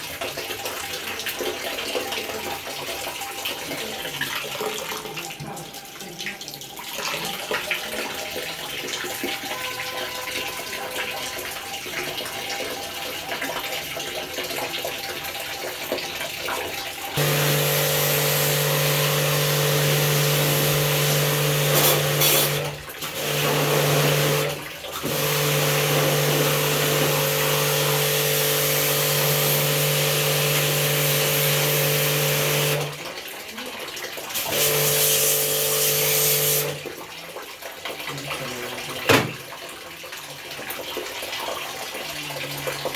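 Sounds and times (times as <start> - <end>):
water running and splashing: 0.0 - 42.9
pressure washer pump humming: 16.7 - 33.2, 34.2 - 37.0
water spray hissing: 17.2 - 24.5.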